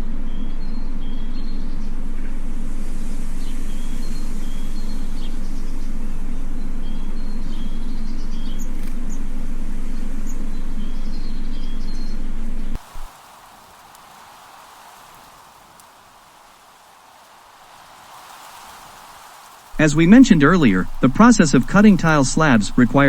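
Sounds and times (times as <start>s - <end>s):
low mechanical drone: 0.0s - 12.8s, 19.8s - 23.0s.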